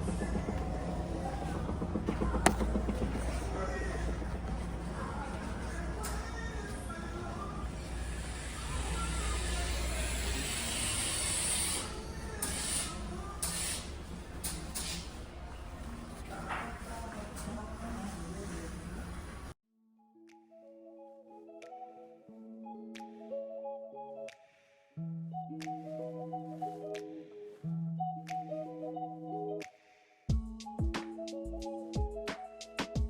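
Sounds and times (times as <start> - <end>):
soft sustained background music: 19.8 - 33.0.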